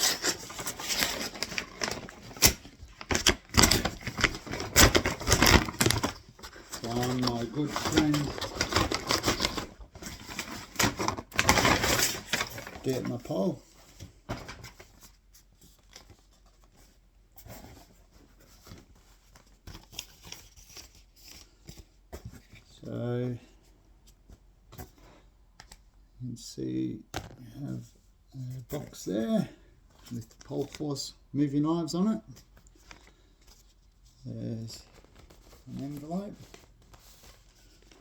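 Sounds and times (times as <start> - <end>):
packaging rustling: 0.0 - 13.5.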